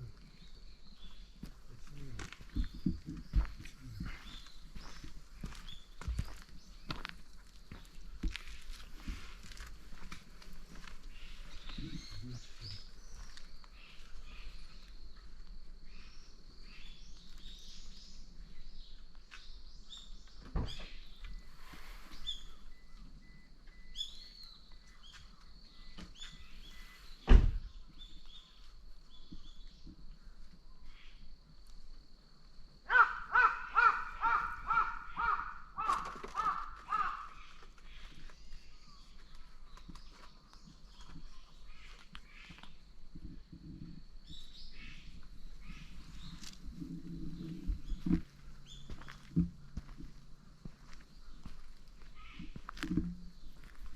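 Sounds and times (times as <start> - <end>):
small birds chirping: 0.0 - 31.5, 33.2 - 53.9
faint steady high tone: 22.2 - 27.0
animal calling in short calls: 32.9 - 37.5.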